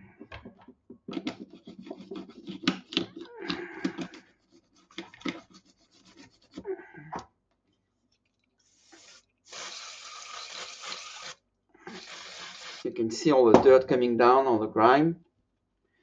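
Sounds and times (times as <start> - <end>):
scratchy brushing on metal: 1.3 - 2.7, 3.7 - 6.7
aerosol spray hiss: 8.7 - 12.9.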